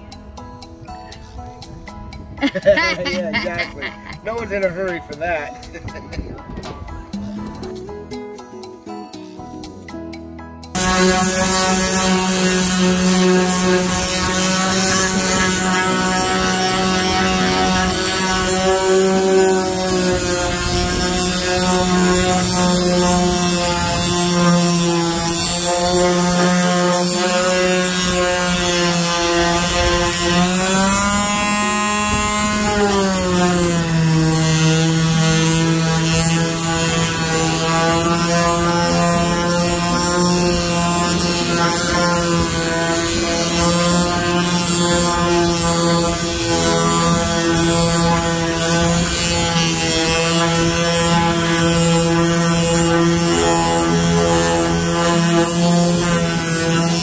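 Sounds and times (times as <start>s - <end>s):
electric power sander running: 2.4s - 6.0s, 10.7s - 57.0s.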